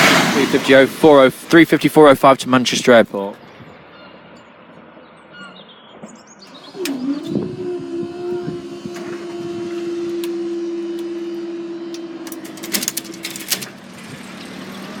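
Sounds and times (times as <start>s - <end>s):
electric train whine: 6.5s - 15.0s.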